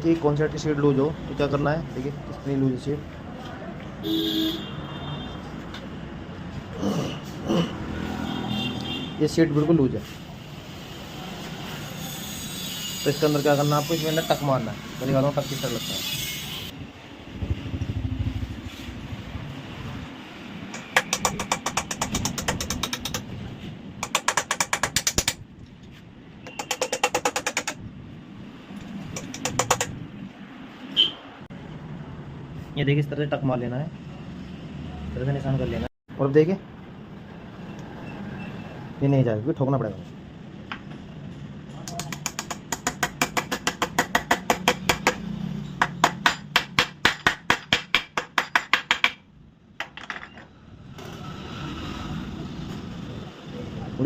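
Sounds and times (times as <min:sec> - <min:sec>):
rapid hammer blows: 0:20.7 - 0:23.3, 0:24.0 - 0:25.4, 0:26.4 - 0:27.8
ratchet clicking: 0:20.8 - 0:23.3.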